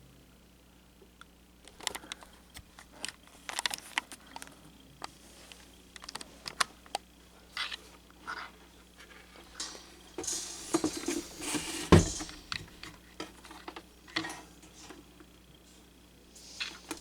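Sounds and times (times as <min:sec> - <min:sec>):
plastic fan clicks and taps: 0:01.1 - 0:05.2, 0:05.9 - 0:07.1, 0:09.5 - 0:15.2.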